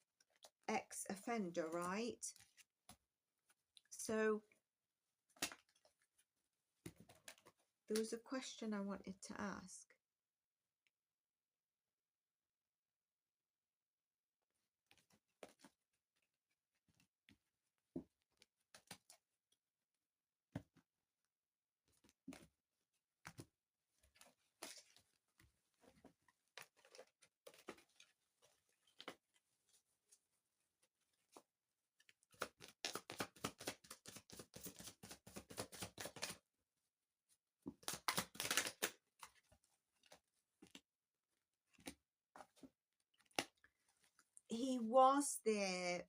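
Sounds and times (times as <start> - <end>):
cards clicking and tapping: 32.3 - 36.4, 37.7 - 39.0.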